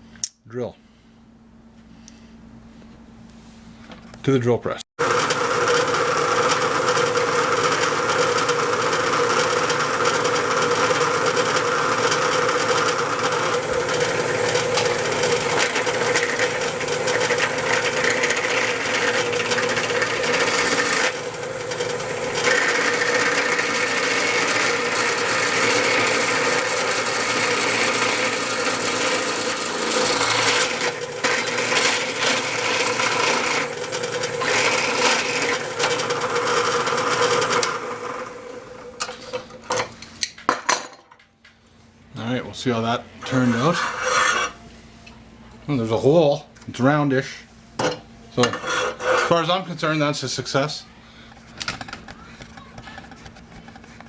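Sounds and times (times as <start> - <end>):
drill bit cutting metal: 5.0 - 37.8
drill press motor humming: 5.0 - 39.8.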